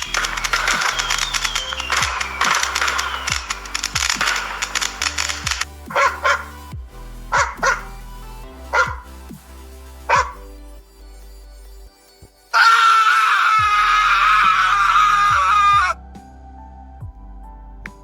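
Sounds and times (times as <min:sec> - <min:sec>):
background music: 0:00.0 - 0:18.0
dog barking: 0:05.9 - 0:06.5, 0:07.3 - 0:07.9, 0:08.7 - 0:09.1, 0:10.1 - 0:10.4.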